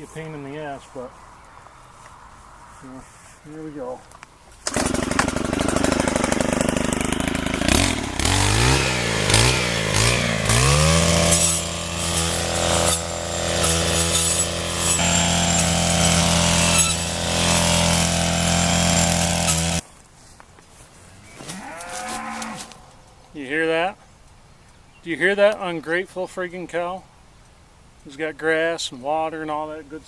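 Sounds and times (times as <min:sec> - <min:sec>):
brush cutter engine revving: 0:04.6 - 0:19.8.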